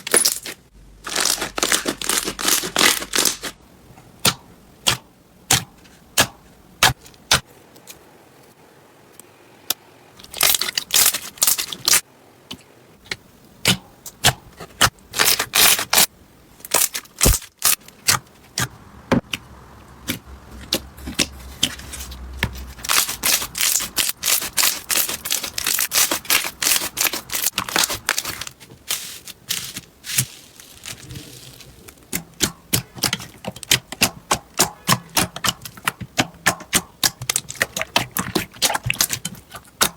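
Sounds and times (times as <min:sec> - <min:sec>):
slime crackling and popping: 0:01.1 - 0:03.6, 0:22.8 - 0:39.9.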